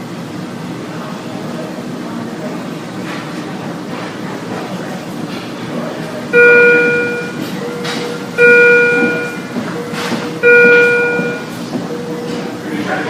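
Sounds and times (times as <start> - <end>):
murmur of voices: 0.3 - 13.0
electronic alert chime: 6.4 - 7.4, 8.4 - 9.5, 10.4 - 11.5.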